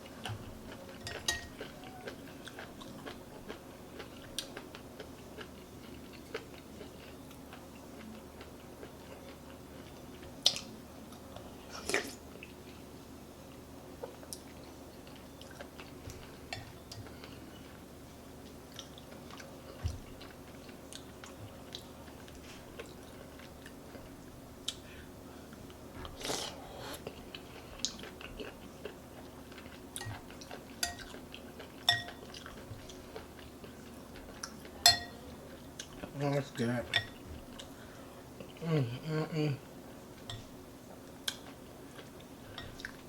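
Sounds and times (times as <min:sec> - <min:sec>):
close chewing and mouth sounds: 0:00.0 - 0:38.8, 0:39.6 - 0:43.0
steady low hum: 0:00.0 - 0:43.0
spoon clinking against bowl: 0:01.0 - 0:01.7, 0:30.8 - 0:31.1, 0:31.8 - 0:32.2, 0:34.8 - 0:35.2.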